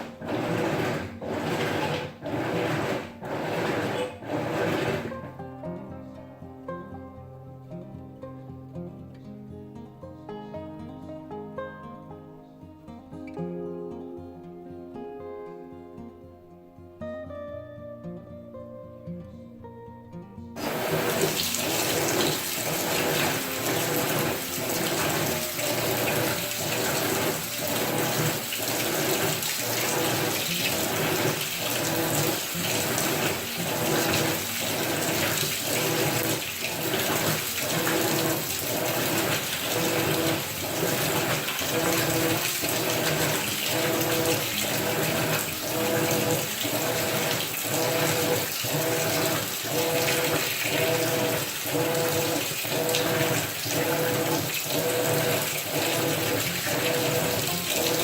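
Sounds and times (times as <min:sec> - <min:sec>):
washing machine motor hum: 0:00.0 - 0:05.4, 0:20.6 - 0:58.0
water sloshing in washing machine: 0:00.0 - 0:05.4, 0:20.6 - 0:58.0.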